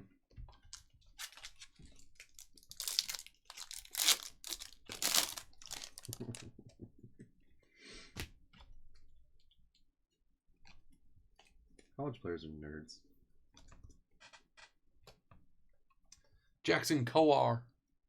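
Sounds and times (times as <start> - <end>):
card pack wrapper tearing: 1.2 - 6.4
wrapper rustling: 1.2 - 6.4.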